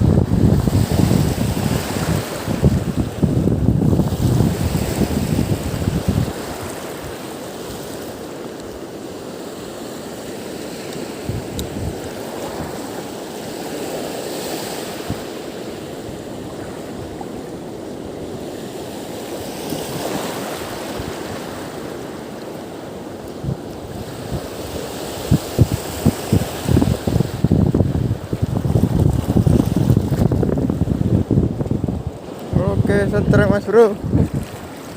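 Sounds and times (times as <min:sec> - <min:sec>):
wind buffeting microphone: 0:00.0 - 0:07.2, 0:11.1 - 0:12.9, 0:14.6 - 0:22.1, 0:23.3 - 0:34.9
rush of water: 0:00.0 - 0:34.9.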